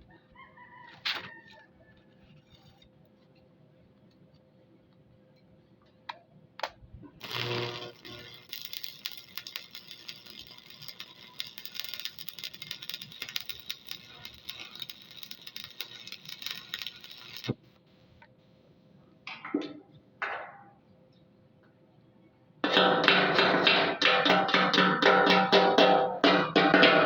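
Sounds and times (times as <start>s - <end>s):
welding arc crackling: 7.1s - 17.8s.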